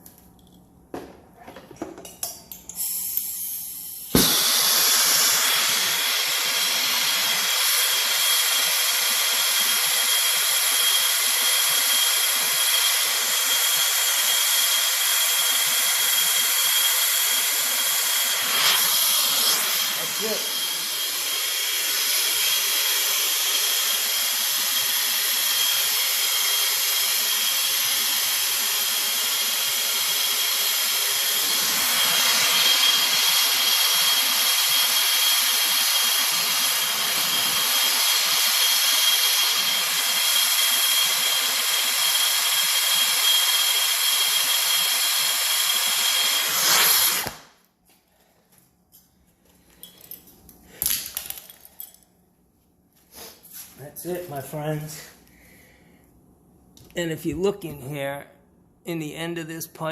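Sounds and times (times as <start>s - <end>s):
torch hissing: 2.7s - 47.5s.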